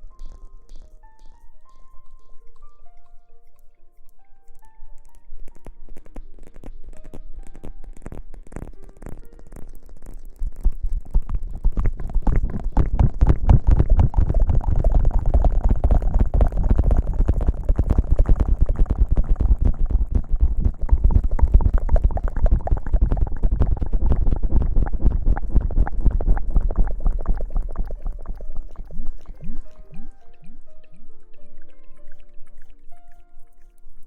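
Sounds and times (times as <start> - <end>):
low thumps: 10.9 - 32.2.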